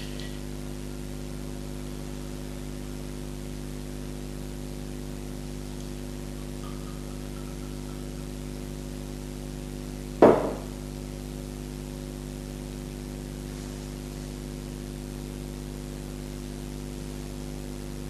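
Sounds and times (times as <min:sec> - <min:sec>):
electrical hum: 0:00.0 - 0:18.0
hard object knocking on worktop: 0:10.2 - 0:10.7.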